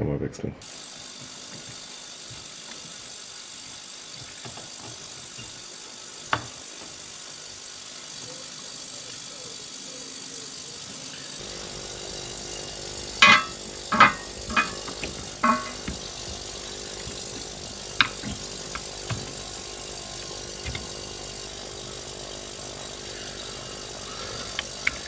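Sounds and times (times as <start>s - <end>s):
loud metallic clatter: 13.2s - 16.2s.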